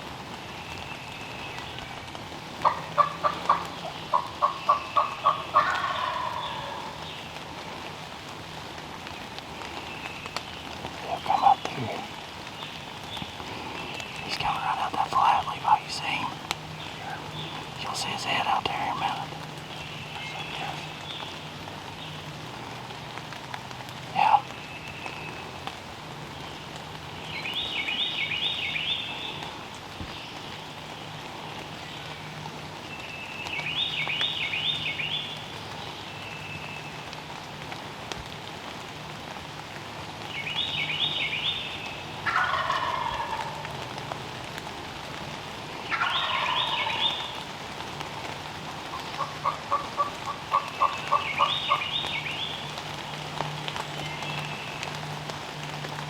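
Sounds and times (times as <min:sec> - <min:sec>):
light rain pattering: 0:00.0 - 0:56.0
hen turkey yelps: 0:02.6 - 0:06.8, 0:42.2 - 0:43.7, 0:45.9 - 0:47.3, 0:48.9 - 0:51.8
turkey gobbling: 0:02.6 - 0:07.0, 0:42.2 - 0:43.7, 0:45.9 - 0:47.4, 0:48.8 - 0:52.0.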